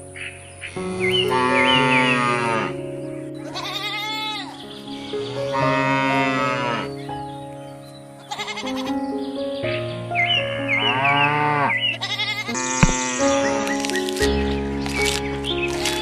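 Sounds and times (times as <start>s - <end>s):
background music: 0.0s - 16.0s
wavering animal bleats: 3.4s - 4.7s, 8.3s - 8.9s, 10.8s - 13.3s.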